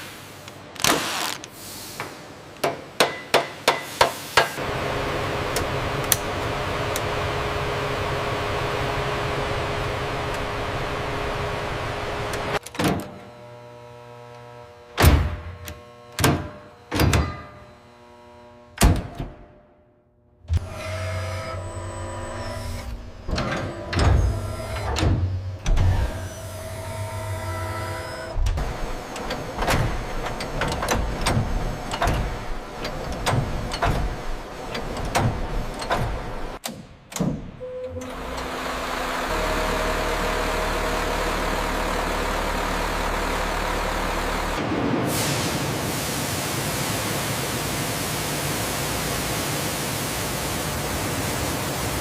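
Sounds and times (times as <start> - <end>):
heavy mechanical thumps: 28.3 - 36.6.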